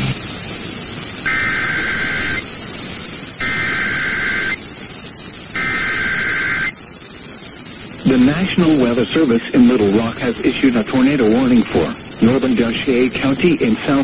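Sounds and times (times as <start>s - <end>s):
radio hiss: 0.0s - 14.0s
two-tone digital data bursts: 1.2s - 2.6s, 3.4s - 4.7s, 5.5s - 6.9s.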